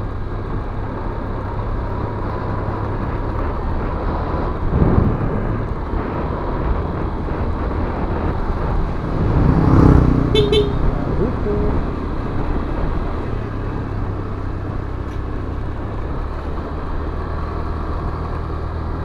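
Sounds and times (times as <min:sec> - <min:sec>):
road noise: 0:00.0 - 0:19.0
wind noise on microphone: 0:02.6 - 0:14.4
scooter engine running: 0:07.2 - 0:19.0.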